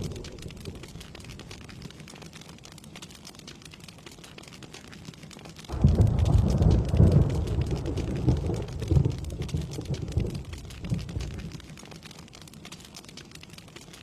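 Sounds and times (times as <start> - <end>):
thunder rumble: 0.0 - 1.7, 5.7 - 11.7
rain falling: 0.0 - 14.0.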